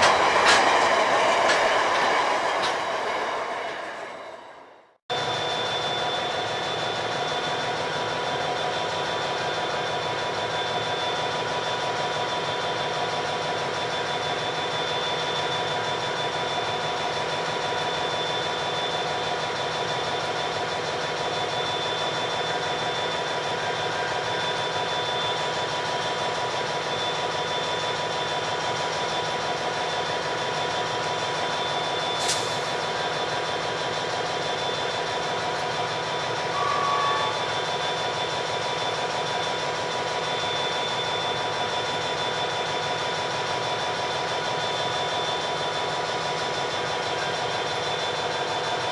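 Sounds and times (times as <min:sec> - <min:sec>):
high whine: 0:00.0 - 0:05.0
diesel locomotive idling: 0:00.0 - 0:48.9.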